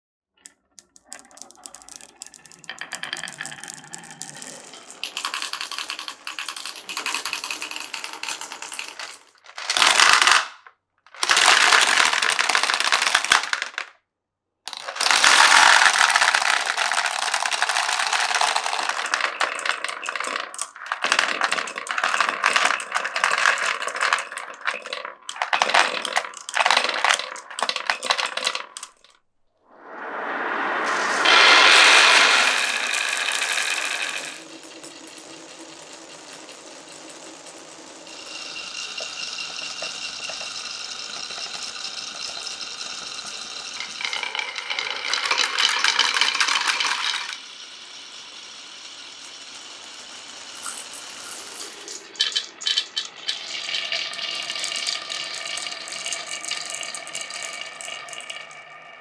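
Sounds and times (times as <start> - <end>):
marbles rattling down marble run: 0.8 - 14.0, 14.7 - 29.2, 30.8 - 59.0.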